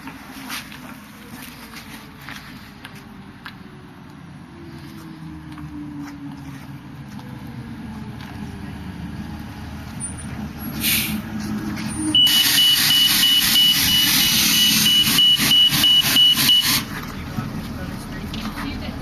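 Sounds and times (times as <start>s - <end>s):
bus engine running: 0.0s - 19.0s
air brake hiss: 10.8s - 11.2s
loud air hiss: 10.8s - 11.2s, 12.2s - 16.9s
fast high beeping: 12.2s - 16.8s.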